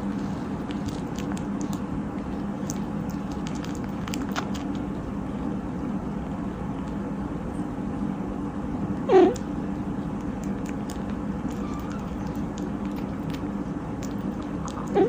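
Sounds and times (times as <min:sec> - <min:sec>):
kitten purring: 0:09.1 - 0:09.5, 0:10.2 - 0:15.0.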